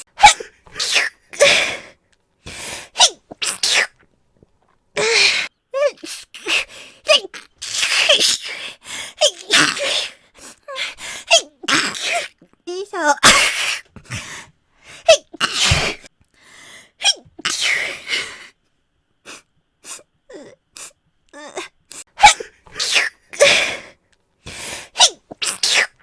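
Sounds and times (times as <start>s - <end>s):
person sneezing: 0.0s - 1.9s, 2.5s - 4.0s, 9.2s - 10.2s, 13.2s - 14.3s, 15.0s - 16.1s, 17.0s - 18.4s, 21.6s - 23.9s, 24.5s - 26.0s.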